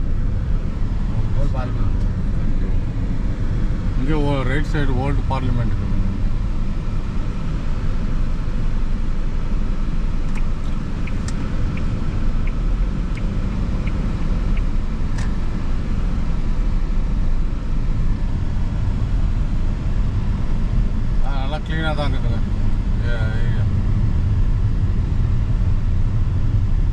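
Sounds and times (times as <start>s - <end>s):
car engine and tyre rumble: 0.0s - 26.9s
light evenly spaced ticks: 10.3s - 15.3s.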